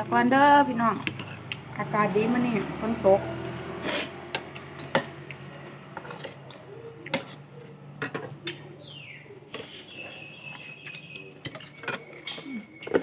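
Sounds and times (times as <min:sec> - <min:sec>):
cutlery and dishes clinking: 0:03.8 - 0:08.7, 0:10.6 - 0:13.0.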